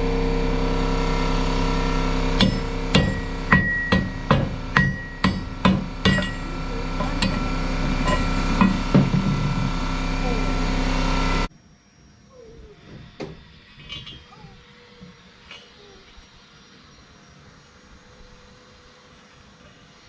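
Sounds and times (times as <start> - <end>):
steady machine hum: 0.0 - 20.0
hammer striking steel: 2.4 - 10.7.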